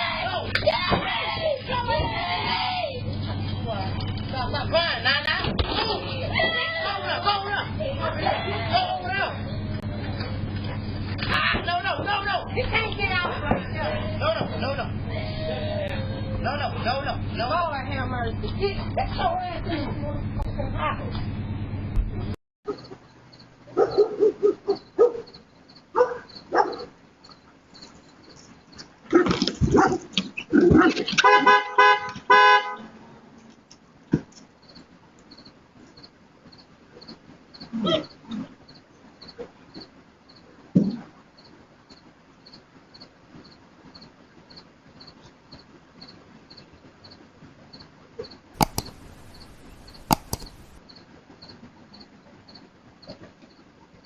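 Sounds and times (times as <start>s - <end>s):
dog barking: 23.7s - 27.0s, 29.1s - 30.1s
sharp clicks: 48.6s - 50.8s.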